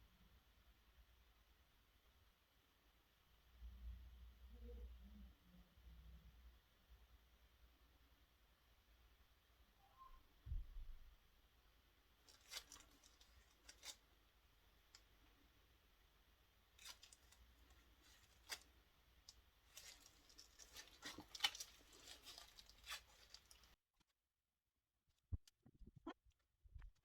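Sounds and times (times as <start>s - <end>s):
small objects clicking and rustling: 12.3s - 14.0s, 16.8s - 23.8s.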